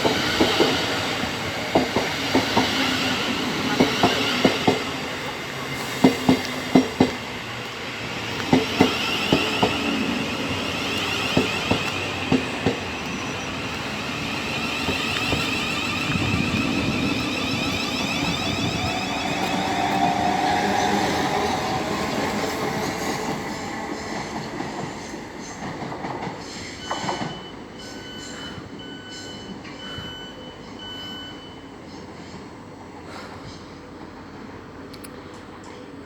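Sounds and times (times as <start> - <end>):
electric train passing: 0.0 - 31.9
train wheel squeal: 8.4 - 32.4
short beeps: 26.8 - 31.8.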